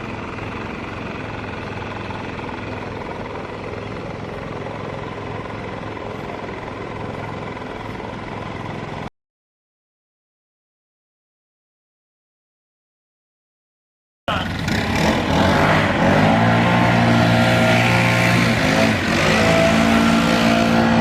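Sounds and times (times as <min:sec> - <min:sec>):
small petrol engine running: 0:00.0 - 0:09.1, 0:14.3 - 0:21.0.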